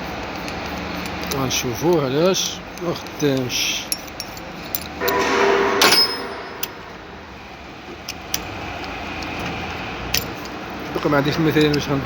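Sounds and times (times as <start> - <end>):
metal parts rattling: 0.2 - 6.9
metal tools clinking: 0.3 - 7.0.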